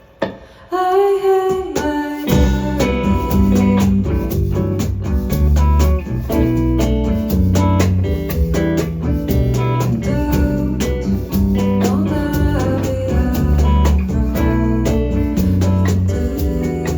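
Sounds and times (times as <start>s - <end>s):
drum hits: 1.5s - 10.7s
plucked guitar: 2.3s - 16.9s
sustained bass notes: 2.3s - 16.9s.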